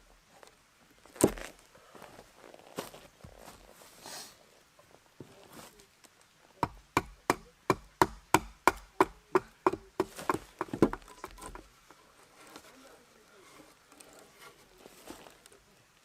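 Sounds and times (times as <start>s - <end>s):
tool knocking on wood: 6.6s - 11.6s.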